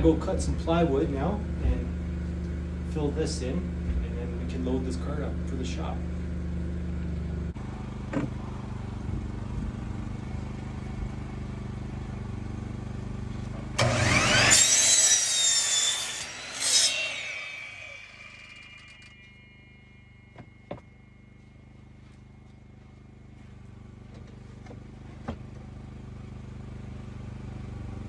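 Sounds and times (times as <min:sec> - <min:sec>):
electric saw cutting plywood: 0:13.7 - 0:21.1
low hum: 0:13.8 - 0:24.6.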